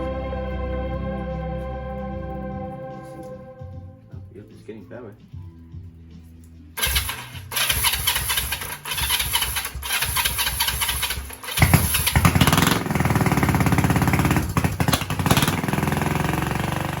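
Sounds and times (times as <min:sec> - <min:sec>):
motorcycle engine cranking and running: 0:06.8 - 0:17.0.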